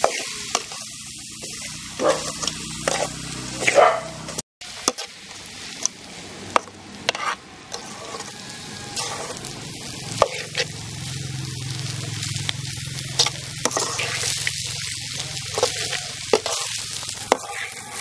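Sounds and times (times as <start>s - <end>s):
spoon scraping and knocking pan: 0.0s - 0.8s, 1.4s - 5.1s, 6.5s - 8.4s, 15.4s - 18.0s
food sizzling in oil: 0.0s - 18.0s.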